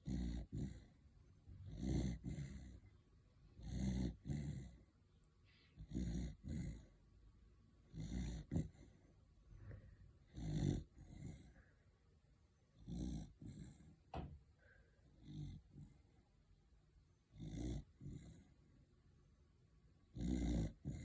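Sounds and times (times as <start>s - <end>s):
dog snoring: 0.0s - 2.9s, 3.5s - 4.8s, 5.7s - 7.0s, 7.8s - 9.1s, 9.7s - 11.7s, 12.8s - 14.0s, 14.7s - 16.2s, 17.3s - 18.6s, 20.1s - 21.0s.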